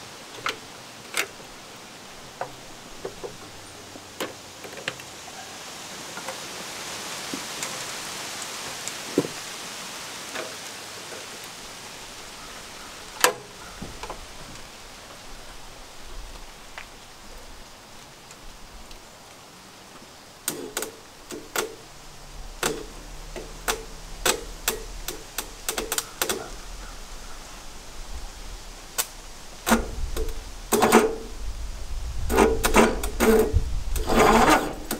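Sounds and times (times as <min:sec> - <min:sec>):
steady hiss: 0:00.0 - 0:34.9
tools clicking and knocking: 0:22.6 - 0:26.5.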